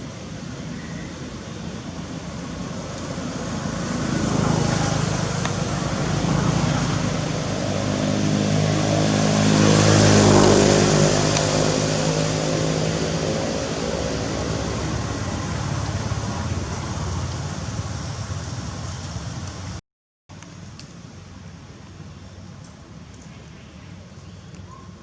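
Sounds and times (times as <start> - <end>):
vehicle engine passing by: 0.6 - 19.8.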